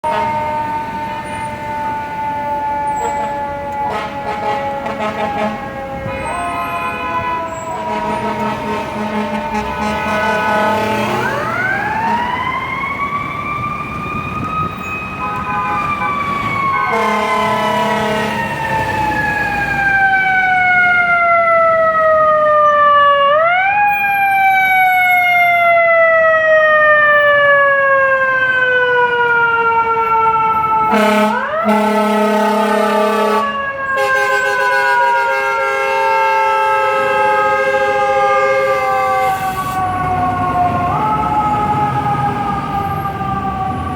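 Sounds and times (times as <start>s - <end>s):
truck air horn blasts: 0.0s - 0.4s, 3.0s - 11.4s, 15.2s - 16.2s, 16.8s - 18.5s, 30.9s - 39.8s.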